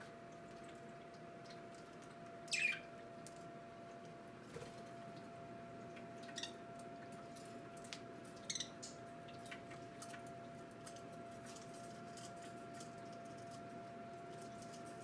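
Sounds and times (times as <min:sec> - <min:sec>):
fountain pump hum: 0:00.0 - 0:15.0
trickling water: 0:00.0 - 0:15.0
parakeets chirping: 0:02.5 - 0:02.9, 0:06.3 - 0:06.6, 0:08.4 - 0:08.9.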